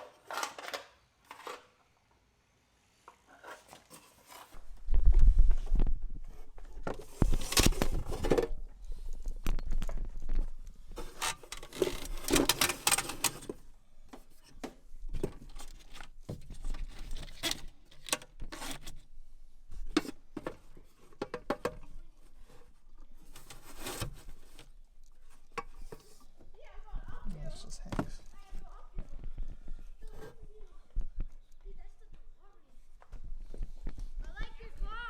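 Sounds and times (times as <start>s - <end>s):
parts scraping and rubbing: 11.0s - 13.6s.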